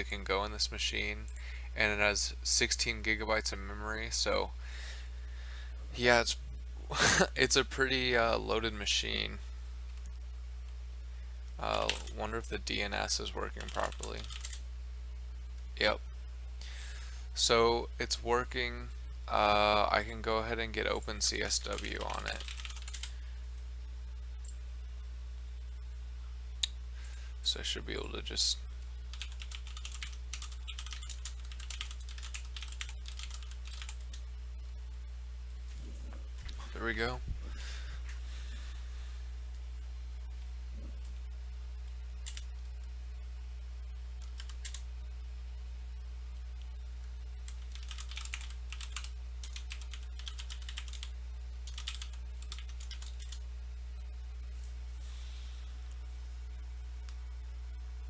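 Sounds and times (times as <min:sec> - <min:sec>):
steady low hum: 0:00.0 - 0:58.0
typing on computer keyboard: 0:13.6 - 0:14.6, 0:21.6 - 0:23.1, 0:29.1 - 0:34.2, 0:44.2 - 0:44.8, 0:47.5 - 0:51.1, 0:51.7 - 0:53.4.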